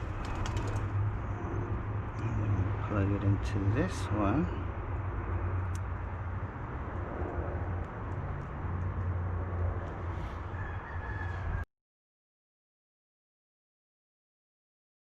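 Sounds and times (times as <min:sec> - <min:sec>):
low outdoor rumble: 0:00.0 - 0:11.6.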